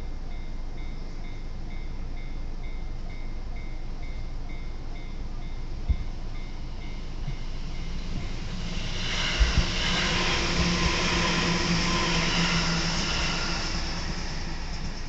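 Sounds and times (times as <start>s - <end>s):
train wheels rushing: 6.0s - 15.0s.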